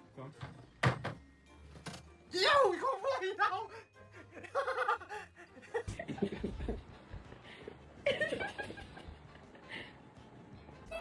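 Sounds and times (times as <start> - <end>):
person laughing: 4.2 - 6.7.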